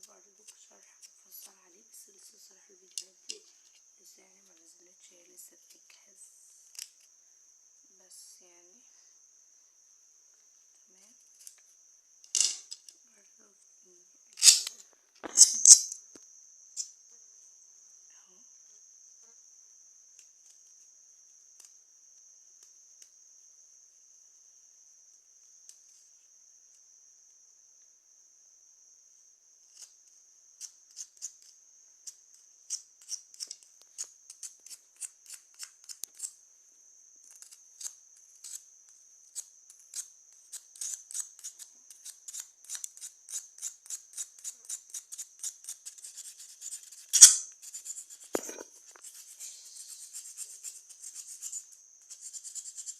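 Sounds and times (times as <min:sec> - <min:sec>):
faint high whine: 0:00.0 - 0:30.4
cuttlebone being scraped: 0:39.8 - 0:52.9.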